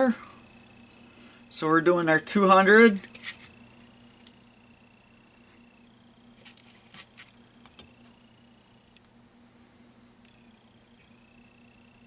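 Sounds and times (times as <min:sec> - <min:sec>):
faint high whine: 0:00.0 - 0:12.0
low steady hum: 0:00.0 - 0:12.0.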